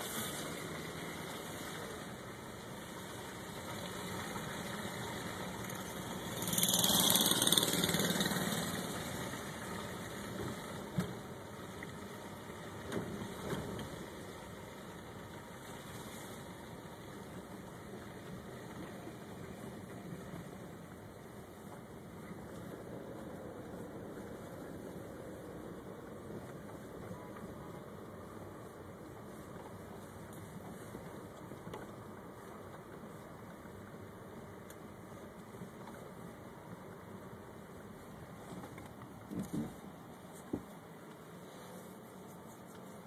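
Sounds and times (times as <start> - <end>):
vehicle engine running: 0.0 - 15.8.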